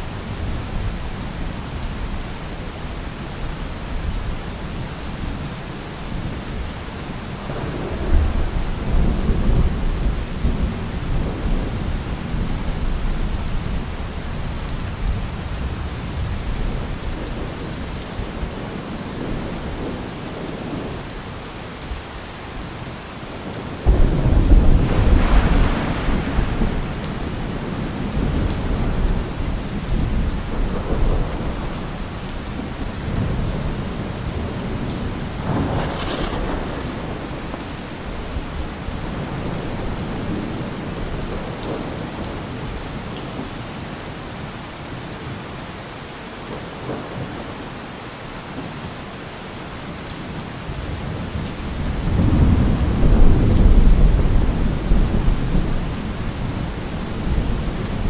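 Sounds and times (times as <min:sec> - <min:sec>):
heavy rain: 0:00.0 - 0:58.0
loud thunderclap: 0:23.8 - 0:31.7, 0:35.4 - 0:37.7, 0:52.0 - 0:55.8
rolling thunder: 0:23.8 - 0:42.5, 0:51.1 - 0:58.0.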